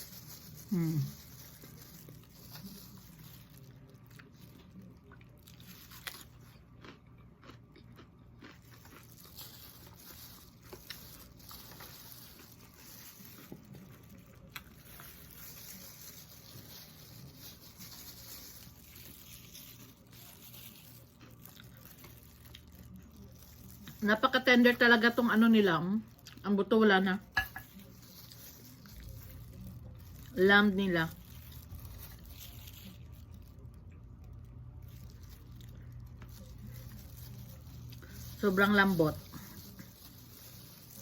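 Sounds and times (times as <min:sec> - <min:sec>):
person chewing food: 0:00.0 - 0:23.9, 0:31.2 - 0:38.4.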